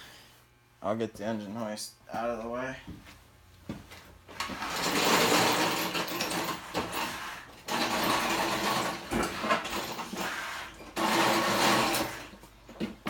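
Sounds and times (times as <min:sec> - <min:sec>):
engine hoist casters rolling: 0:04.4 - 0:12.4.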